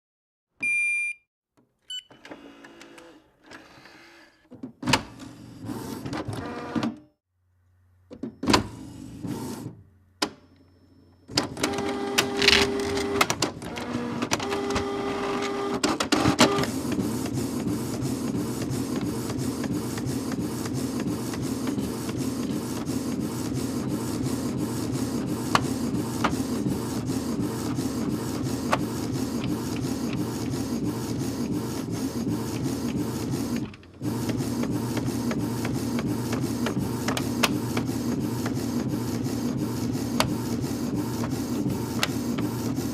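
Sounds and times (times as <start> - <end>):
printer paper feed whirring: 5.1 - 7.0, 8.4 - 9.7, 11.3 - 42.9.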